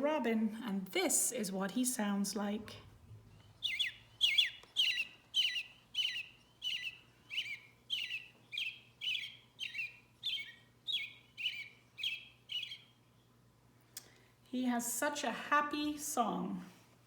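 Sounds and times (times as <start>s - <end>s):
faint electronic hum: 0.0s - 17.0s
bird song from small speaker: 3.3s - 13.4s.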